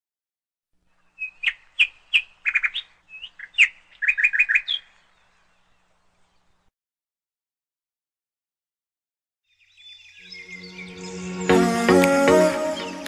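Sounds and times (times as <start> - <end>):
bird chirping: 0.9 - 6.7, 9.5 - 13.0.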